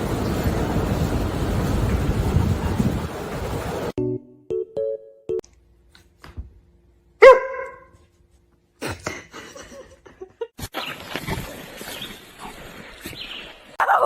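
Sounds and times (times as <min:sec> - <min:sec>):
dog barking: 0:07.2 - 0:07.9.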